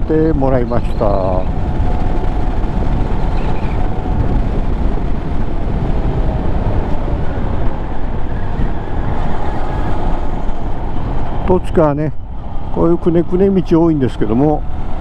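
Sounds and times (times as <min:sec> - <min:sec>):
wind noise on microphone: 0:00.0 - 0:15.0.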